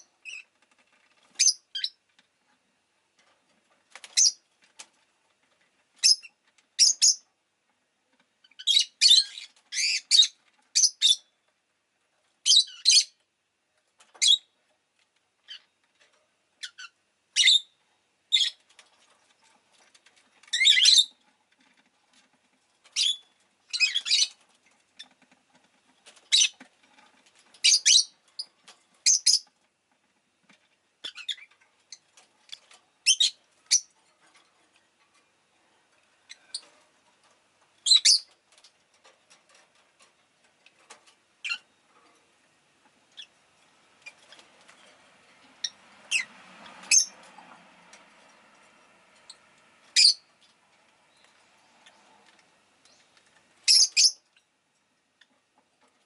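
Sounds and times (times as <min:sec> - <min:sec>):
lovebird chirping: 0:06.0 - 0:07.2, 0:08.5 - 0:11.3, 0:20.5 - 0:21.1, 0:23.0 - 0:24.3, 0:27.6 - 0:29.4, 0:33.0 - 0:33.9, 0:37.8 - 0:38.3, 0:46.9 - 0:47.2, 0:49.2 - 0:50.3, 0:52.9 - 0:54.4.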